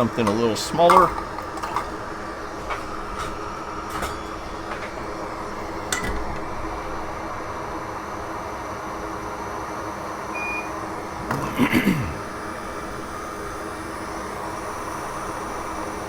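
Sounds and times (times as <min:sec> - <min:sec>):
fan whirring: 0:00.0 - 0:16.0.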